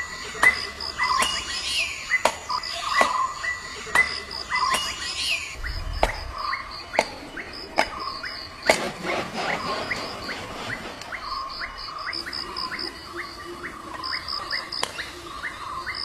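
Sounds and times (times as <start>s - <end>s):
insects chirping: 0.0s - 16.0s
bird chirps and clicks: 0.2s - 8.9s, 11.0s - 16.0s.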